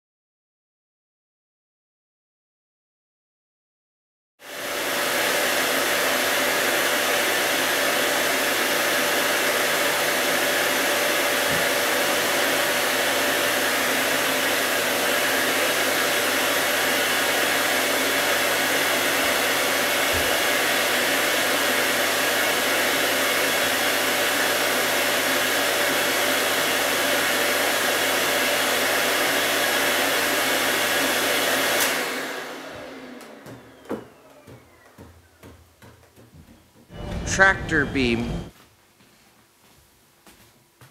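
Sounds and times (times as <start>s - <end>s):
vacuum cleaner running: 4.4s - 38.5s.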